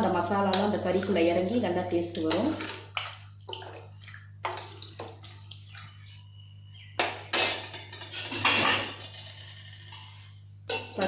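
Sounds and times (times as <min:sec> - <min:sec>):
metal spoon scraping a pot: 0:07.3 - 0:11.0.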